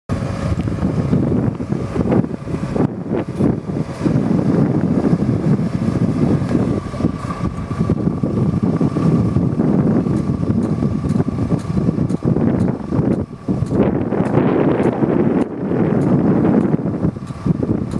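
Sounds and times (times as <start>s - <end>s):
excavator diesel engine running: 0.1s - 17.9s
faint steady whine: 0.1s - 17.9s.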